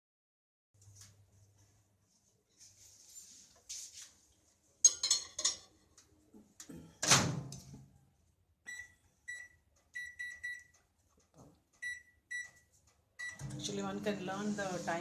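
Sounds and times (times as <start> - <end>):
microwave electronic beeps: 8.7 - 10.7, 11.8 - 12.6, 13.2 - 13.5.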